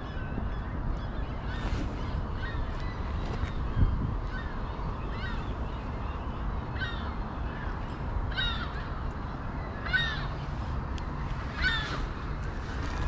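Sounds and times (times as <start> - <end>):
bird harsh cries: 0.0 - 7.7, 8.3 - 9.0, 9.7 - 10.6, 11.4 - 12.3.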